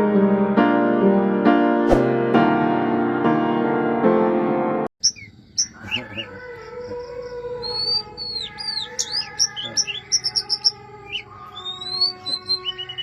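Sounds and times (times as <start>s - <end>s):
bird singing whistles: 5.0s - 13.0s.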